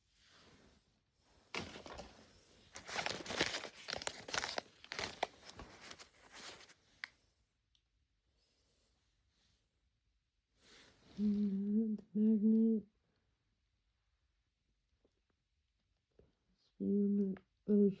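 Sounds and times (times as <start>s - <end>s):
plastic packaging crinkling: 2.7s - 7.1s.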